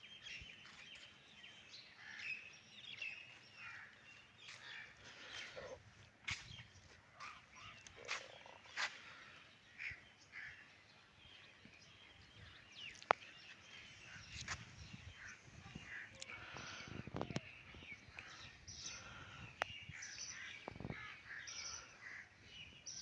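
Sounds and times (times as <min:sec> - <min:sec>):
birds chirping: 0:00.0 - 0:23.0
faint outdoor background noise: 0:00.0 - 0:23.0.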